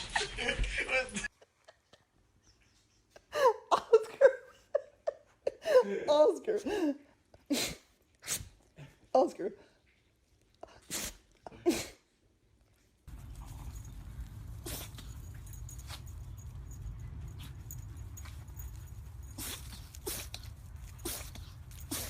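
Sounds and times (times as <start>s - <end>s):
pet sneezing: 7.4s - 9.0s, 10.7s - 12.1s, 14.5s - 15.2s, 19.2s - 22.0s
steady low rumble: 13.1s - 21.9s.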